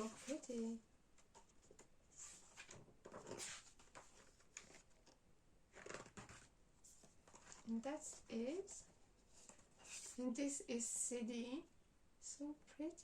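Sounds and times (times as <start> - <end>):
paper rustling and soft knocks: 0.0 - 10.4.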